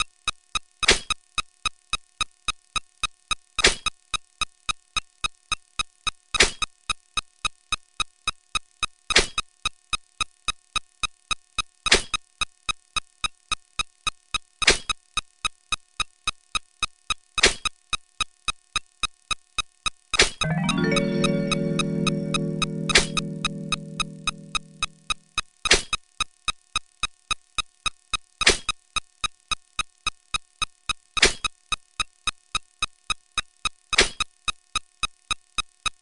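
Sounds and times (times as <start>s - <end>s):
longer electronic sound: 20.4s - 25.2s
electronic pitched ticks: 21.0s - 25.4s.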